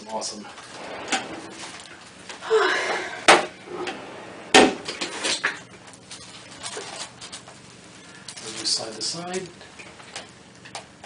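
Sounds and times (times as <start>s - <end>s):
handling and clatter: 4.8s - 7.7s.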